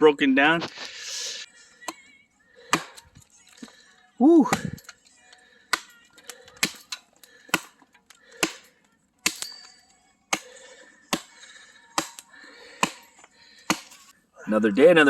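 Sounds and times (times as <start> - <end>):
axe chopping wood: 2.7 - 3.2, 4.5 - 4.9, 5.7 - 14.1.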